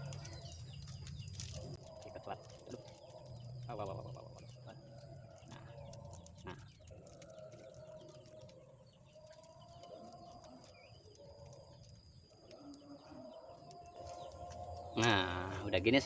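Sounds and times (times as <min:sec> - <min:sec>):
birds calling: 0:00.0 - 0:16.0.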